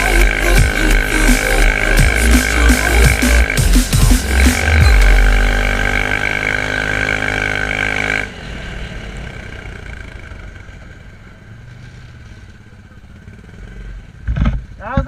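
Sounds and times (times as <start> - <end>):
quad engine running: 0.0 - 15.0.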